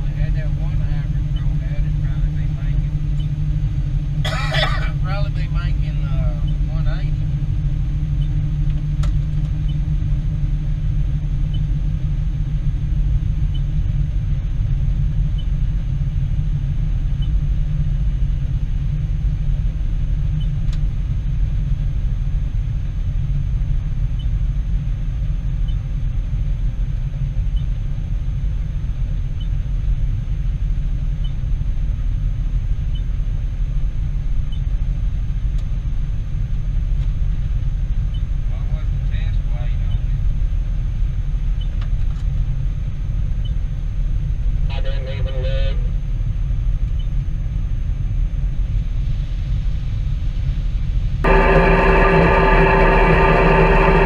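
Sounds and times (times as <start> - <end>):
heavy vehicle engine rumbling: 0.0 - 13.2, 50.8 - 54.0
faint high whine: 51.2 - 54.0.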